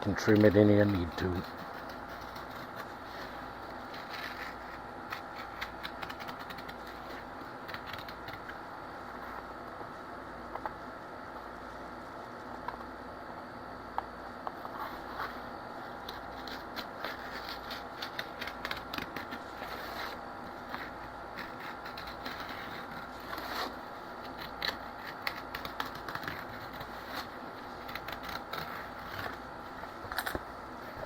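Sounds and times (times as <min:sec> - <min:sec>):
low background hum: 0:00.0 - 0:31.0
razor blade scratching cardboard: 0:00.1 - 0:08.6, 0:16.0 - 0:29.5.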